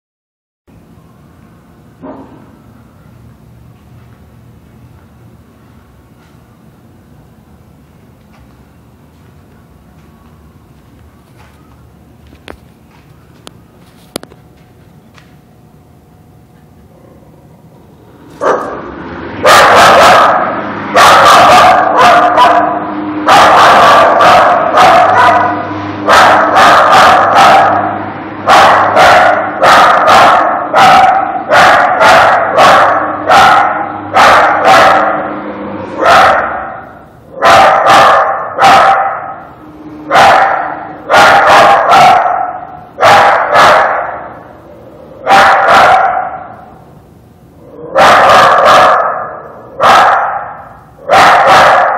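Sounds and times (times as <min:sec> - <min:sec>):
dog barking: 0:18.4 - 0:18.8, 0:19.4 - 0:35.3, 0:36.0 - 0:44.3, 0:45.2 - 0:46.7, 0:47.8 - 0:51.9.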